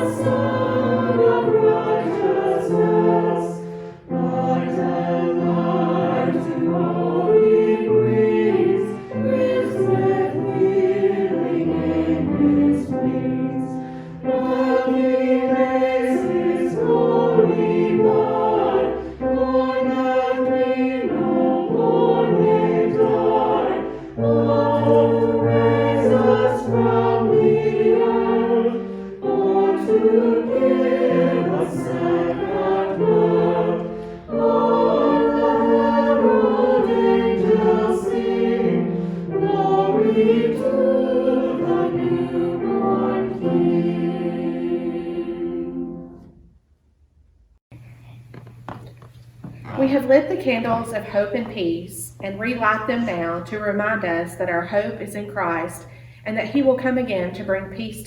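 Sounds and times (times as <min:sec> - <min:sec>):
choir singing a hymn: 0:00.0 - 0:46.4.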